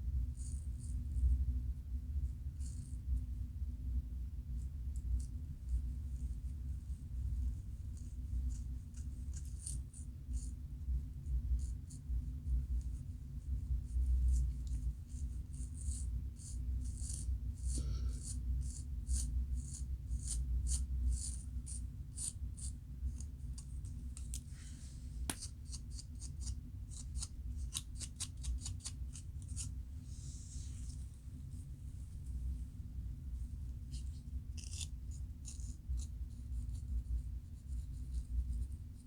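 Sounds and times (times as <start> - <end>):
steady low hum: 0.0 - 39.0
scratching scalp: 33.9 - 36.8.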